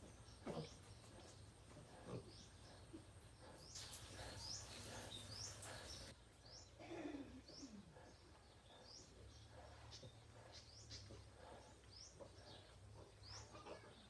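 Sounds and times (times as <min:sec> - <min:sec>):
small bird chirping: 0:00.0 - 0:06.6.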